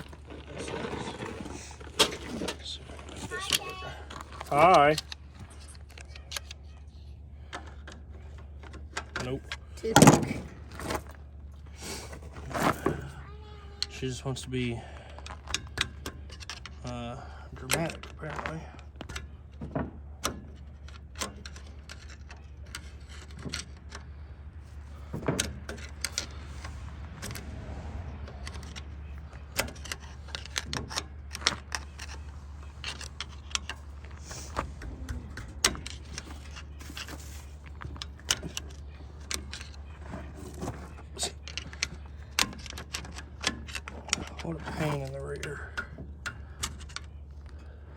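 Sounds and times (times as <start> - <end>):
steady low hum: 0.0 - 47.9
hand tools clinking on metal: 25.0 - 47.9.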